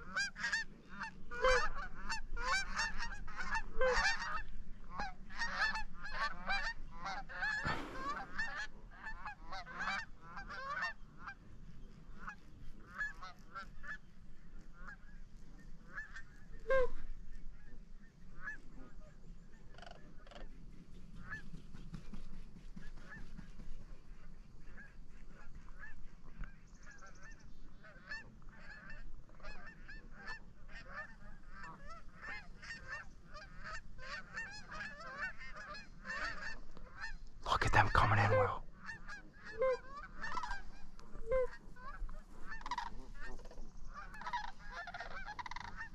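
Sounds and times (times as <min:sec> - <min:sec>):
geese honking: 0:00.0 - 0:11.4, 0:26.9 - 0:45.9.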